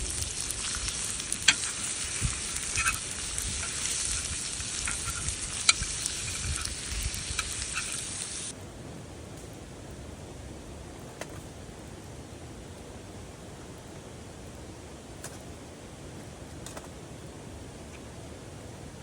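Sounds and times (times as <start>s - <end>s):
meat sizzling in a frying pan: 0.0s - 8.5s
faint steady hiss: 0.0s - 19.0s.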